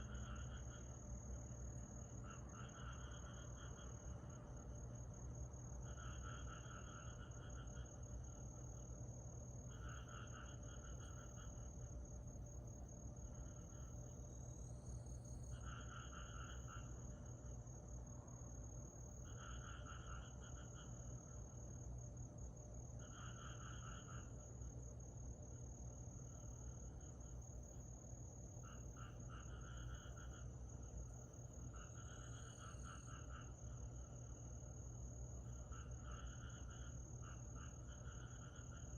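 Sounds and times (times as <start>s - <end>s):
insect pulsed call: 0.0s - 38.9s
insect high-pitched trill: 28.4s - 38.9s.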